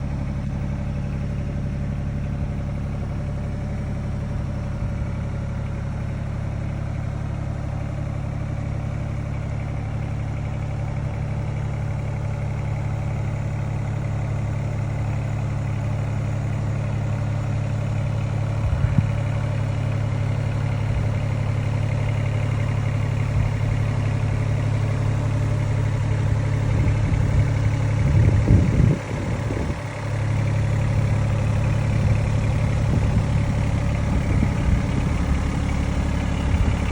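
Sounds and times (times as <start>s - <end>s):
excavator diesel engine running: 0.0s - 36.9s.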